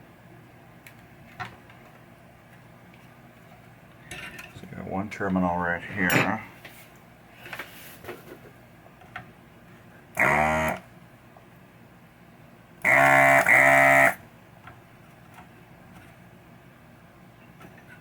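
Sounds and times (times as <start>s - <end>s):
desoldering pump buzzing: 10.1s - 10.9s, 12.8s - 14.3s.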